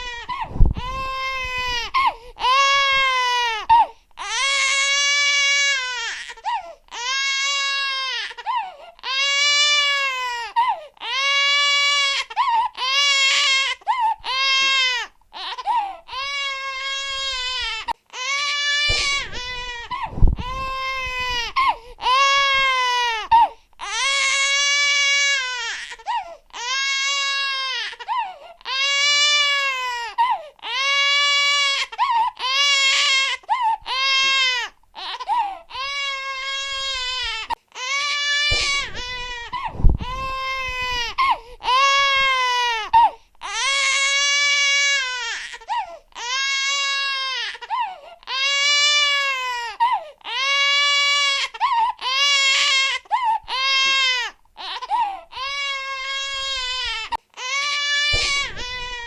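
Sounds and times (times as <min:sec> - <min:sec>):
baby crying: 0:00.0 - 0:59.0
dull low bumps: 0:18.9 - 0:21.6, 0:38.6 - 0:41.2.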